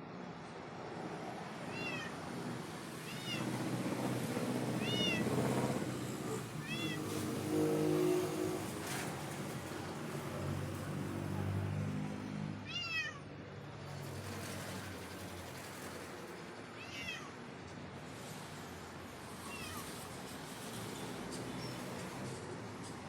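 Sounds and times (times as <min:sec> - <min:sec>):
vehicle hum: 0:01.0 - 0:13.2
cat meowing: 0:01.7 - 0:02.2, 0:03.1 - 0:03.4, 0:04.8 - 0:05.2, 0:06.6 - 0:07.0, 0:12.6 - 0:13.2, 0:16.8 - 0:17.4, 0:19.4 - 0:19.9.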